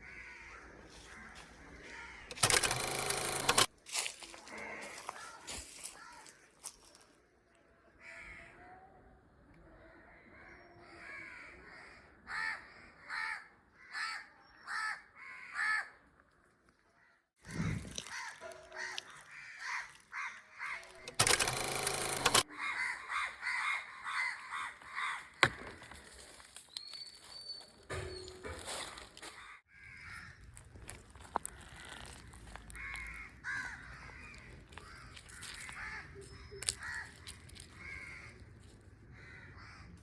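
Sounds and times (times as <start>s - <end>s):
crows cawing: 0.0s - 3.5s, 4.2s - 6.4s, 10.9s - 16.0s, 17.5s - 25.8s, 29.2s - 40.0s.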